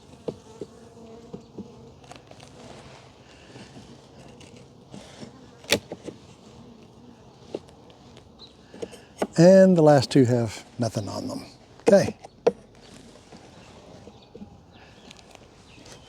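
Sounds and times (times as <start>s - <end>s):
bees buzzing: 0.0s - 12.2s.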